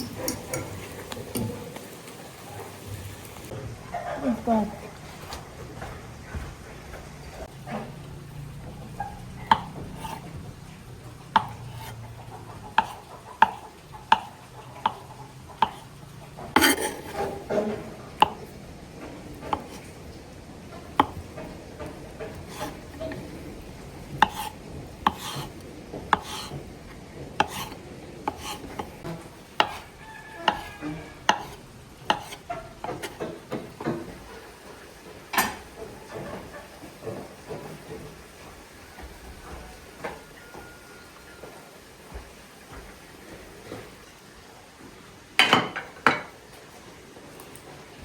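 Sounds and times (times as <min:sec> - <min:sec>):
kitchen utensils knocking and scraping: 0:00.0 - 0:02.8, 0:08.7 - 0:34.4, 0:35.0 - 0:38.4.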